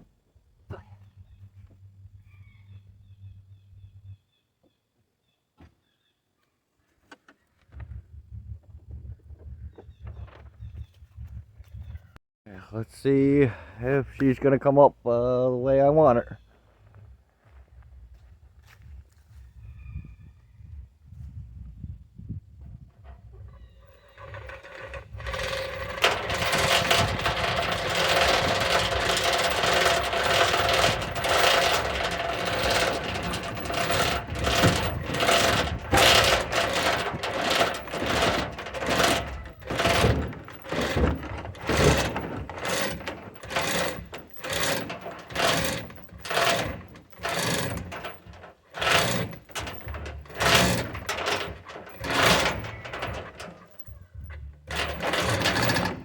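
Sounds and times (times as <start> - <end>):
hoist mechanism whining: 23.8 - 56.0.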